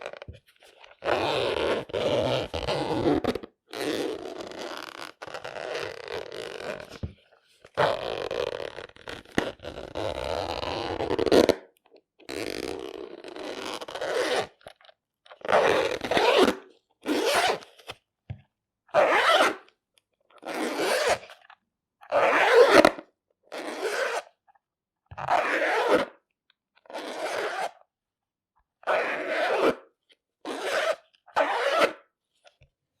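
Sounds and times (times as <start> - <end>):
zipper being pulled: 0.0 - 7.1, 7.7 - 11.7, 12.3 - 14.6, 15.4 - 17.7, 19.0 - 19.7, 20.4 - 21.4, 22.1 - 24.3, 25.2 - 26.2, 26.9 - 27.8, 28.8 - 29.8, 30.4 - 32.1.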